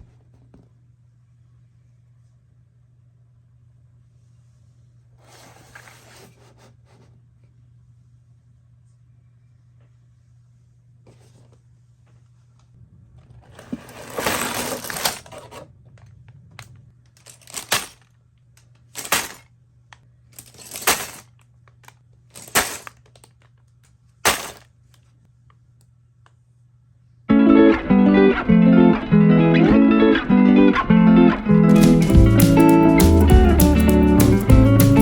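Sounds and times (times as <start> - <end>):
plastic rustling: 13.4 - 15.6, 17.2 - 18.0, 19.0 - 19.4, 20.4 - 21.4, 22.3 - 23.4, 24.2 - 24.6
plastic bricks rattling: 13.5 - 15.6, 17.2 - 18.0, 19.0 - 19.4, 20.4 - 21.4, 22.4 - 23.4, 24.3 - 24.6.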